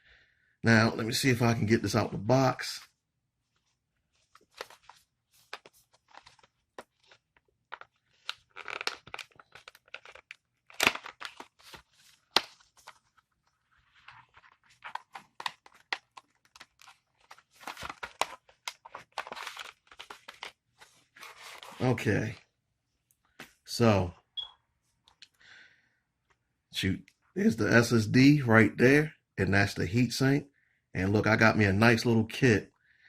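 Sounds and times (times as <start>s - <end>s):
packaging rustling and tearing: 4.2s - 22.1s.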